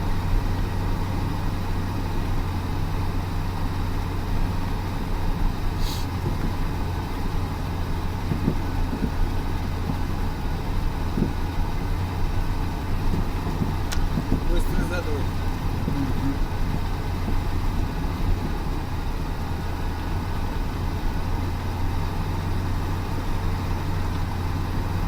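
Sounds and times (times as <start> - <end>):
heavy vehicle engine droning: 0.0 - 25.0
short hiss: 5.8 - 6.2.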